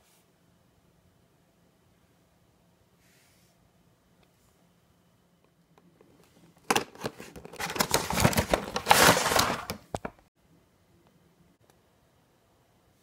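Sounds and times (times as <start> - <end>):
packaging crinkling and tearing: 6.8 - 10.1.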